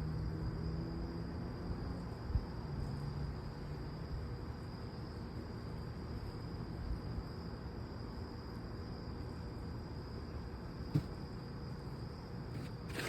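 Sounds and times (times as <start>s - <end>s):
insect chorus: 0.0s - 13.0s.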